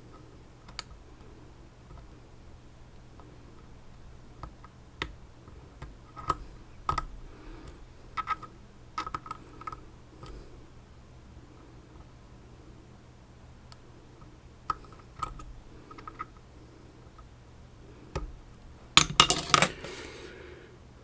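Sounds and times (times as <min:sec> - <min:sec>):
lock pins clicking: 0:19.0 - 0:20.0.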